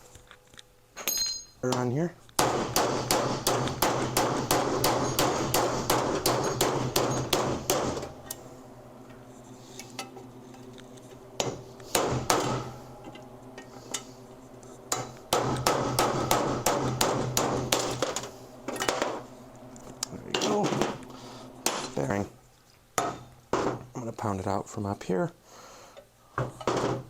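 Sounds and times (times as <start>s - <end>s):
hammer striking metal socket: 1.0s - 8.4s.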